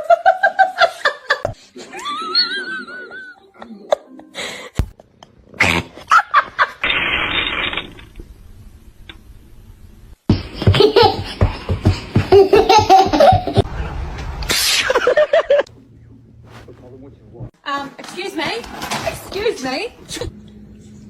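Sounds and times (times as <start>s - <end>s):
person laughing: 10.3s - 13.7s.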